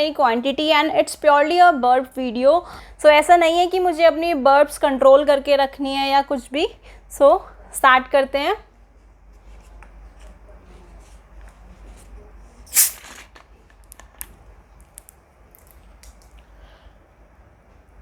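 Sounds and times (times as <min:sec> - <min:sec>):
bottle opening hiss: 0:12.7 - 0:13.3
plastic bottle crackling: 0:12.7 - 0:16.2.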